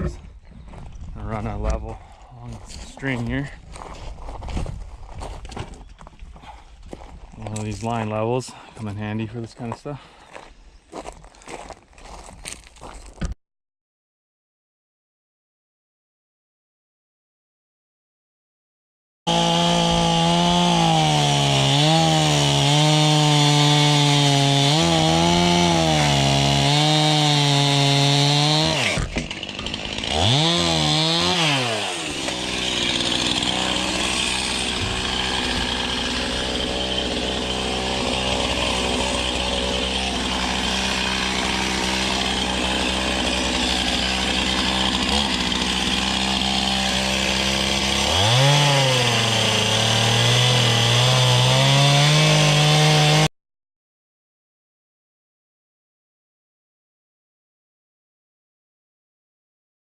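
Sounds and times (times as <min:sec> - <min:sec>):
chainsaw revving and cutting wood: 0:19.3 - 0:53.3.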